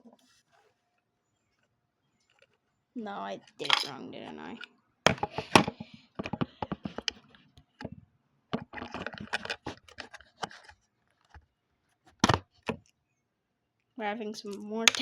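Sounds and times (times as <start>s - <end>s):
plastic bricks clicking and rattling: 8.6s - 10.7s.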